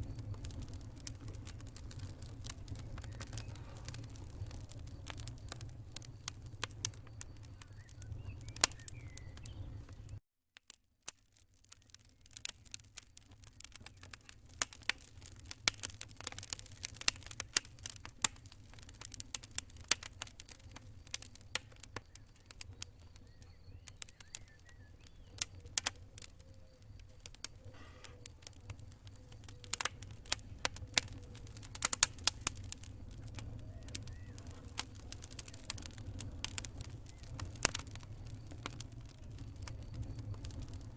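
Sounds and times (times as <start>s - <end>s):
low rumble: 0.0s - 10.2s
wood fire crackling and popping: 0.0s - 40.9s.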